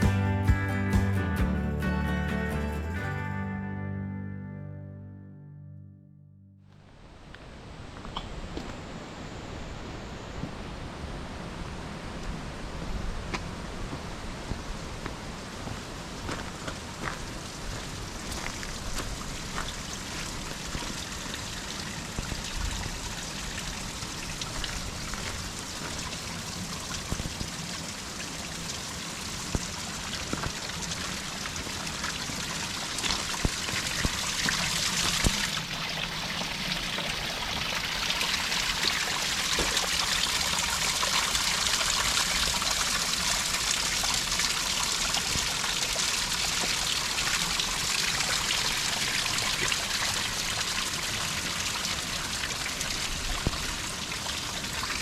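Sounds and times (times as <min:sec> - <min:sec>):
spring water trickling and splashing: 0:15.1 - 0:55.0.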